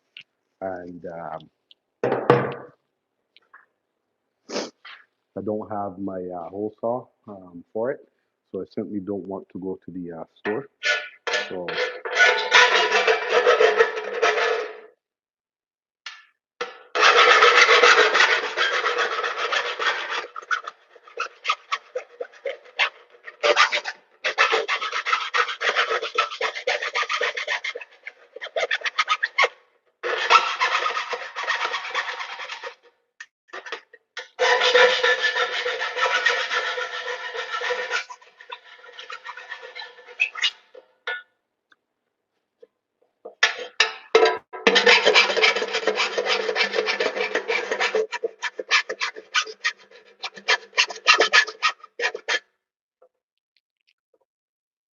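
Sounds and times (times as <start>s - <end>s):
hand file scraping metal: 10.5s - 14.8s, 16.6s - 32.9s, 33.5s - 41.2s, 44.6s - 52.4s
metal box ringing: 43.8s - 44.8s.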